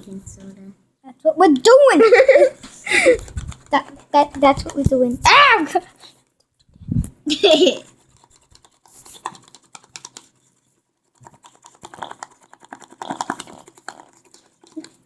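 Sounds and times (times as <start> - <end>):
pencil tapping in a cup: 2.9 - 5.2, 7.5 - 15.0.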